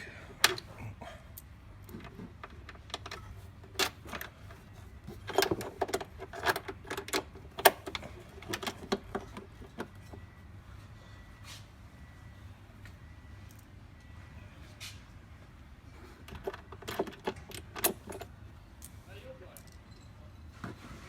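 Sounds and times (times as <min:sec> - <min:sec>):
small metal parts clinking: 0:01.3 - 0:10.4, 0:16.2 - 0:20.4.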